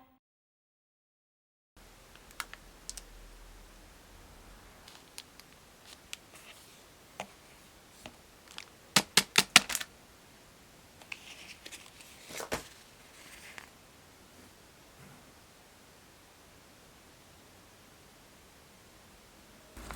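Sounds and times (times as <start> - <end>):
soft rustling: 4.8 - 8.8, 11.0 - 15.3
sharp clicks of craft materials: 8.5 - 9.9.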